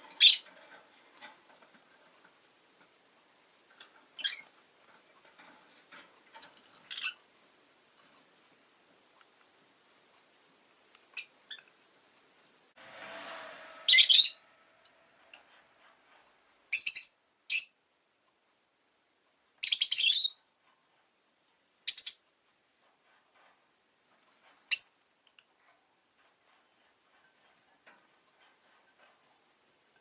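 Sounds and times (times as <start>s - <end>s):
lovebird shrill chirps: 13.9s - 14.4s, 16.7s - 17.8s, 19.6s - 20.4s.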